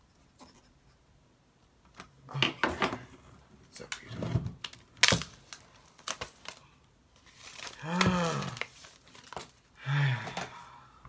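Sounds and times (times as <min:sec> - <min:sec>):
plastic wrapping crinkling and tearing: 0:03.8 - 0:09.7.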